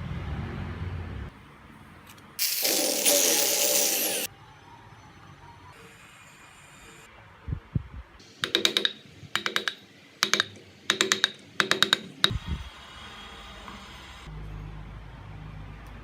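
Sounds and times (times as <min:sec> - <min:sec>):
rapid clicking taps on hard surface: 0:08.4 - 0:12.4.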